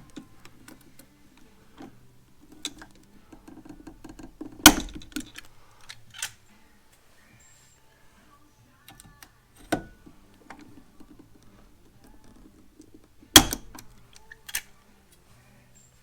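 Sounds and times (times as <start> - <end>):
rivet mandrels snapping: 0.0 - 6.4, 8.9 - 14.8
rivet gun clicks: 0.1 - 6.4, 8.9 - 14.7.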